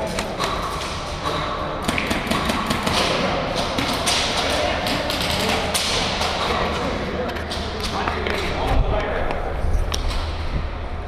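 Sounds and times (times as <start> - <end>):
airsoft guns firing: 1.8 - 6.4.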